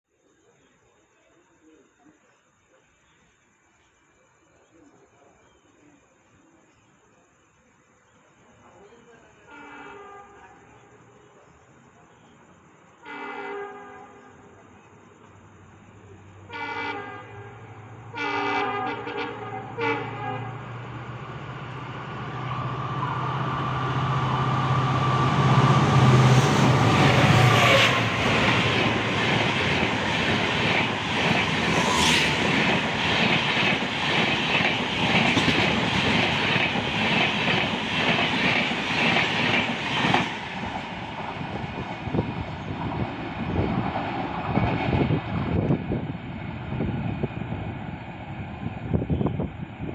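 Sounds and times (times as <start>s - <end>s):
passing train low hum: 8.4s - 49.9s
train horn blasts: 9.5s - 10.8s, 13.0s - 14.5s, 16.5s - 21.0s.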